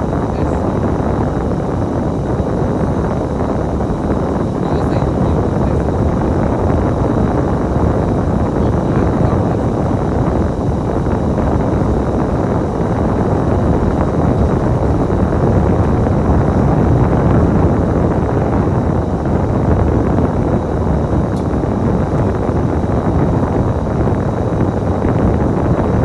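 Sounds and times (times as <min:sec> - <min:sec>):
bus engine rumble: 0:00.0 - 0:18.6.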